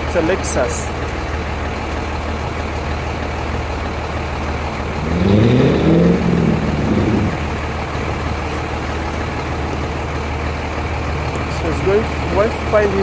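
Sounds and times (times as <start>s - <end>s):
car engine revving: 4.6s - 10.0s.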